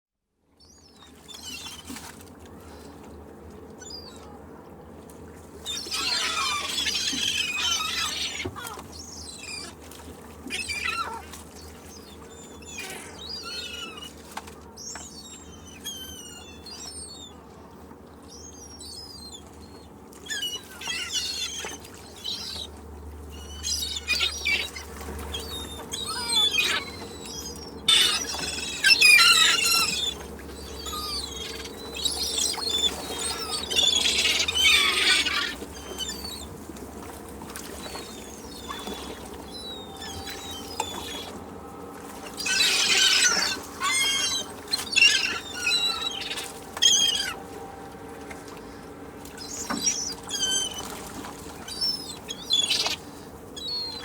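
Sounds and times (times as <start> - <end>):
low background rumble: 0.5 - 54.0
seagulls squawking: 5.7 - 9.8, 10.4 - 11.3, 11.9 - 14.2, 14.8 - 17.4, 18.4 - 22.7, 23.3 - 36.6, 37.8 - 41.4, 42.1 - 47.6, 49.4 - 54.0.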